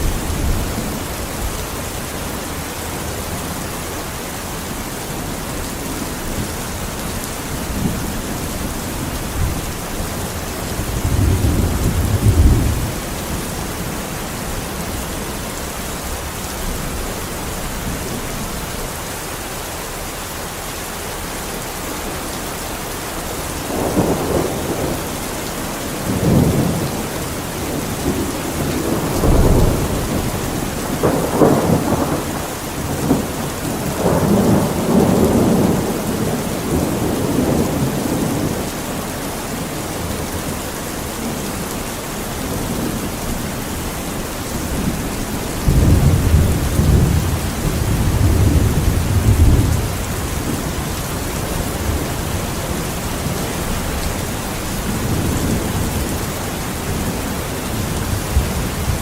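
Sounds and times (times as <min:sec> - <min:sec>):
steady rain: 0:00.0 - 0:59.0
rolling thunder rumbles: 0:04.9 - 0:15.4, 0:23.6 - 0:38.9, 0:42.4 - 0:59.0.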